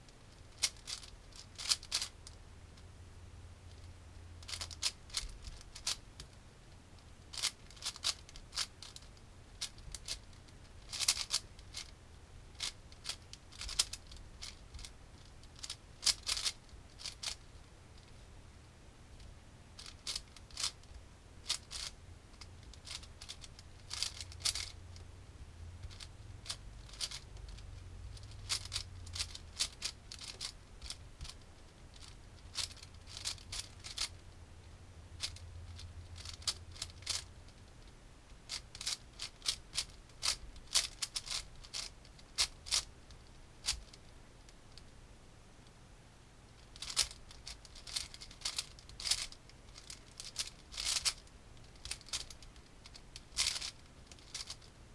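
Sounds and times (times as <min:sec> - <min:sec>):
speed cube layers clicking: 0:00.5 - 0:02.4, 0:03.7 - 0:06.3, 0:07.3 - 0:11.9, 0:12.6 - 0:18.1, 0:19.8 - 0:24.8, 0:25.8 - 0:34.1, 0:35.2 - 0:37.3, 0:38.5 - 0:42.9, 0:46.7 - 0:54.7.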